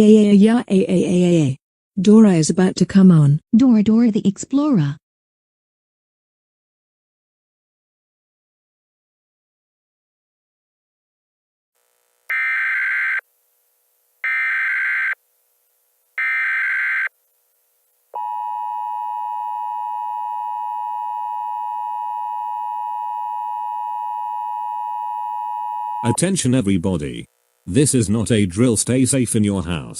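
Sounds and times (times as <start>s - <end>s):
data signal bursts: 12.3s - 13.2s, 14.2s - 15.2s, 16.2s - 17.1s
two-tone attention signal: 12.3s - 13.2s.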